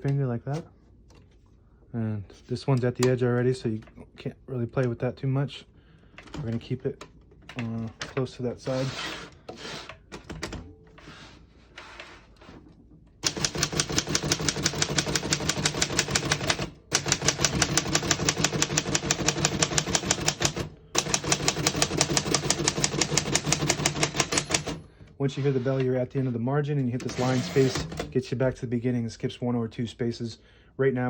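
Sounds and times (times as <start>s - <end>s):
typewriter keys striking: 13.2s - 24.8s
typewriter handling: 13.3s - 24.8s, 27.0s - 28.1s
typewriter margin bell ding: 21.3s - 24.8s.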